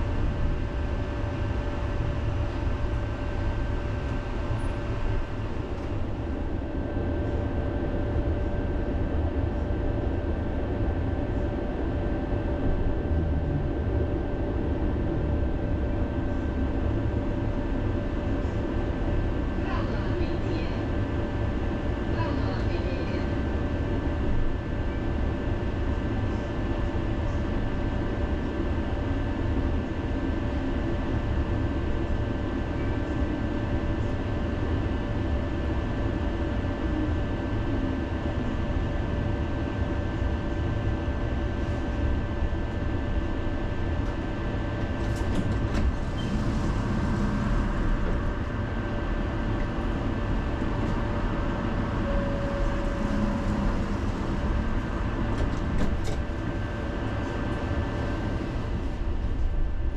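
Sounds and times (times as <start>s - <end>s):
tram rumbling on rails: 0.0s - 59.9s
thin steady whine: 46.2s - 59.9s.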